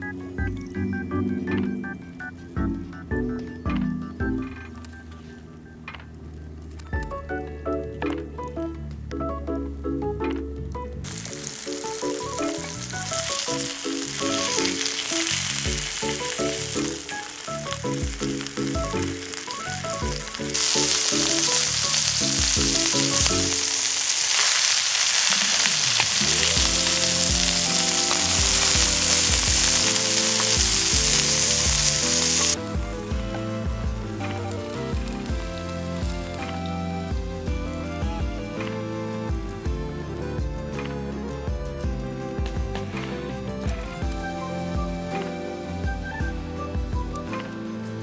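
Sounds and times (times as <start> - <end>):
background music: 0.0 - 48.0
food frying sizzle: 11.1 - 39.2.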